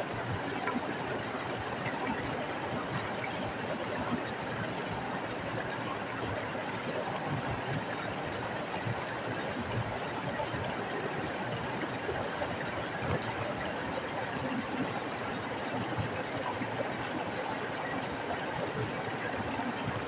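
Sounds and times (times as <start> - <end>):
stream flowing over rocks: 0.0 - 20.0.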